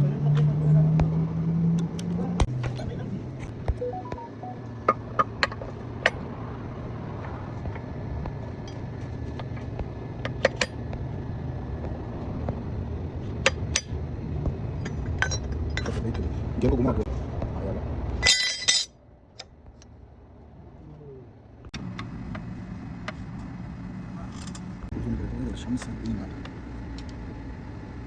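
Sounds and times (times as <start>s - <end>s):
sharp clicks and knocks: 7.3s - 11.0s, 13.3s - 14.0s.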